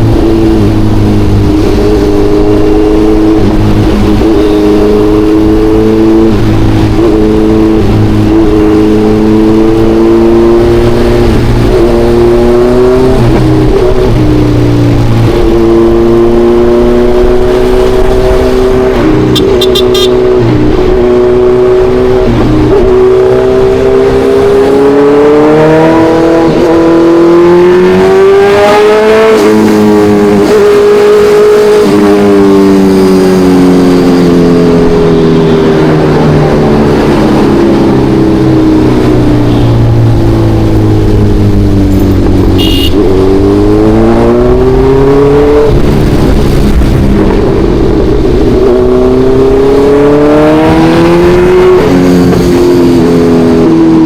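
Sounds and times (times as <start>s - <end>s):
motorcycle engine accelerating: 0.0s - 54.0s
wind rush: 43.5s - 54.0s.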